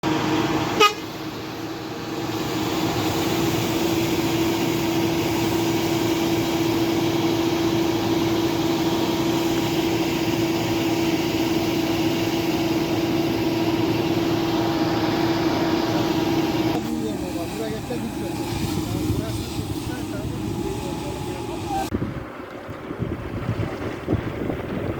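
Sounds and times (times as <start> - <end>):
heavy engine running: 0.0 - 24.9
steady hum: 0.1 - 22.1.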